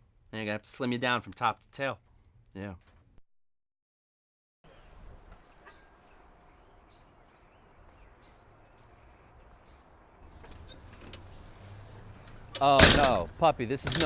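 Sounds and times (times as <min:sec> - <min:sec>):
faint bird chirps: 0:04.7 - 0:10.0.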